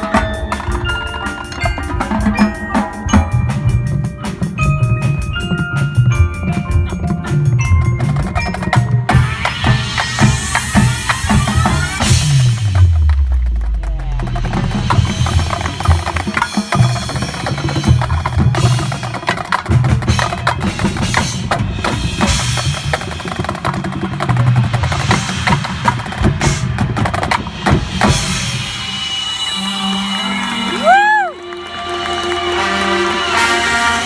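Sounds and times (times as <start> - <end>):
snare drum rolls: 8.3 - 28.8, 31.6 - 34.0
tuned bass drums: 9.3 - 16.4.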